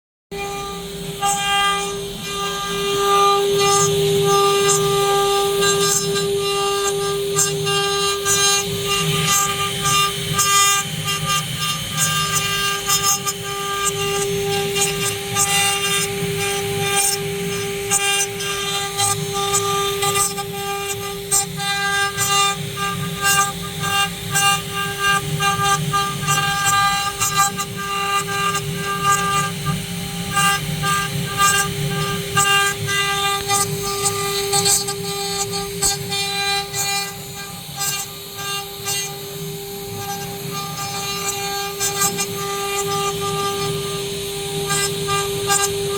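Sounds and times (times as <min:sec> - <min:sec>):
router spindles high whine: 0:00.3 - 0:45.9.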